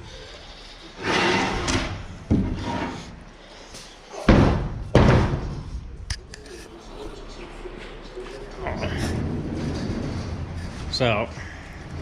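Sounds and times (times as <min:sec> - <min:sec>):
ramp door slamming bangs: 0:04.3 - 0:05.7.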